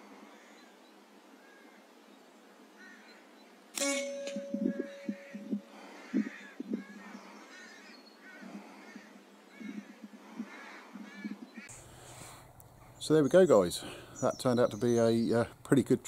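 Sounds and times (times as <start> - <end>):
sharp crack: 3.8 - 4.4
short bird calls: 4.1 - 12.3.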